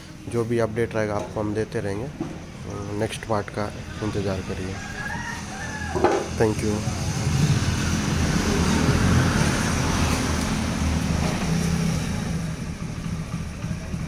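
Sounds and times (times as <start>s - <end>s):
vehicle engine running: 5.4s - 14.0s.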